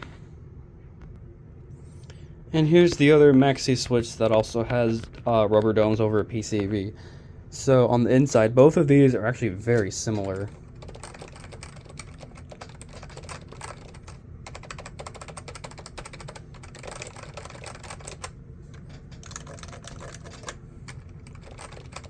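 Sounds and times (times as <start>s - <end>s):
rapid keyboard typing: 9.6s - 22.0s.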